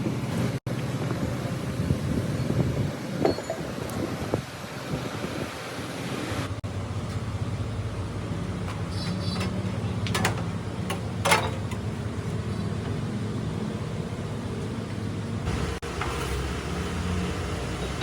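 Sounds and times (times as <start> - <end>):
machine humming: 15.5 - 18.0.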